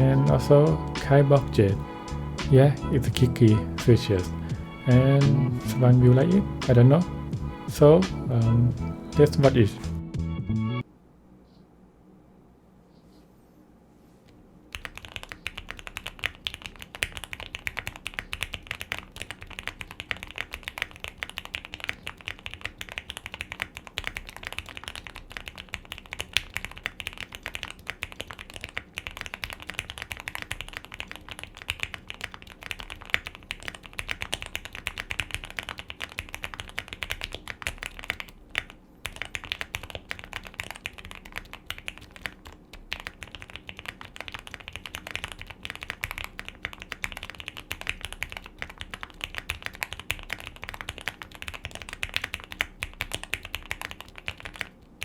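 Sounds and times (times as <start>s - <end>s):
fast typing on mechanical keyboard: 14.7s - 55.0s.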